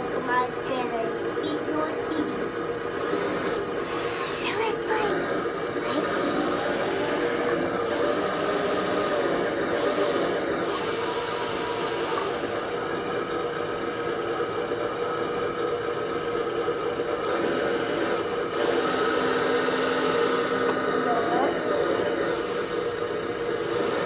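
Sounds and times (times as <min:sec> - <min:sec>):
electric motors whining: 0:00.0 - 0:24.0.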